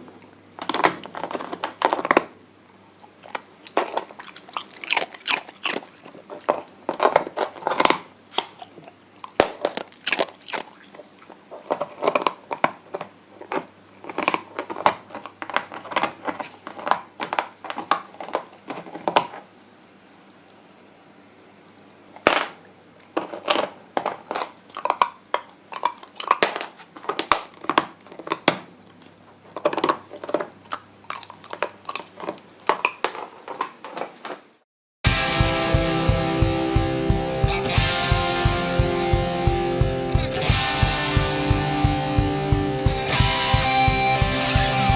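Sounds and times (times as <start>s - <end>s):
puppy crunching ice: 0.0s - 2.4s, 3.0s - 19.4s, 22.2s - 34.5s.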